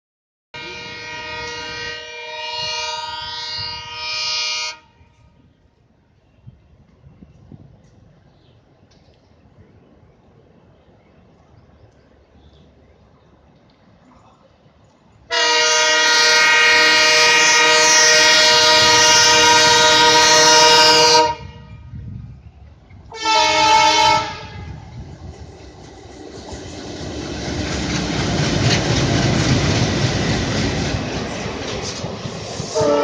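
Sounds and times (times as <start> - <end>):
locomotive horn blasts: 0.6 - 5.4, 15.3 - 22.0, 23.1 - 24.8, 32.7 - 33.0
passing train rumble: 0.6 - 33.0
rail clatter: 24.7 - 33.0.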